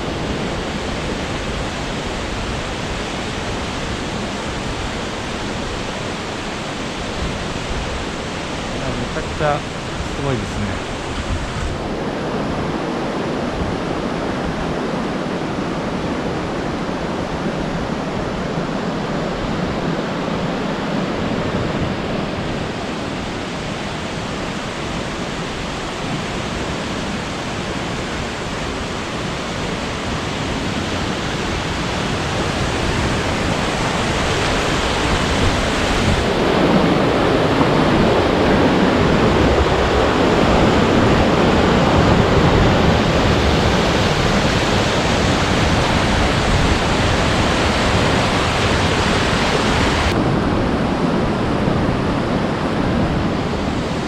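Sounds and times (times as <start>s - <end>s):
waterfall rushing over rock: 0.0s - 12.0s, 22.6s - 50.2s.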